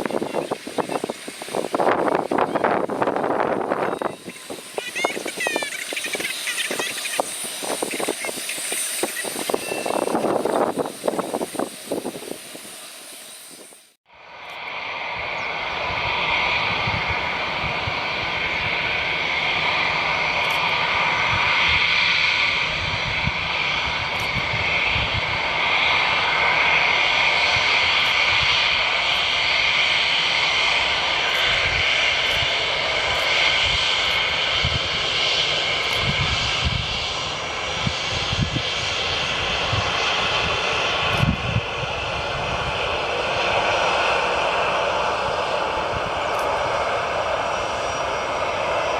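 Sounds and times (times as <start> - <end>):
jet engines hissing: 0.0 - 48.9.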